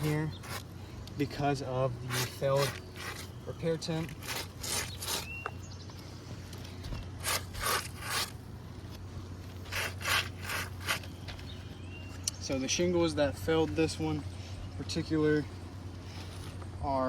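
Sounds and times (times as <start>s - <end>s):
glove scraping asphalt shingle: 0.0s - 5.7s, 6.3s - 11.6s.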